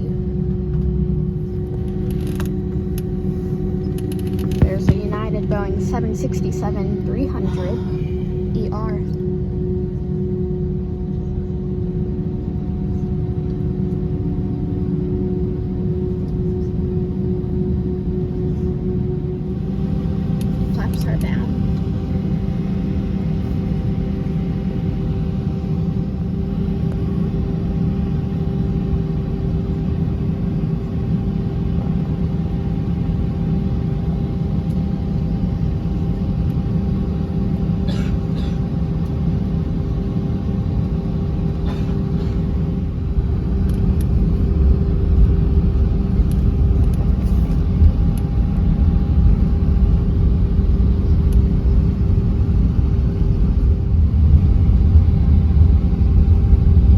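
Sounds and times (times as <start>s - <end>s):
jet engine hum: 0.0s - 56.9s
low rolling rumble: 42.6s - 56.9s.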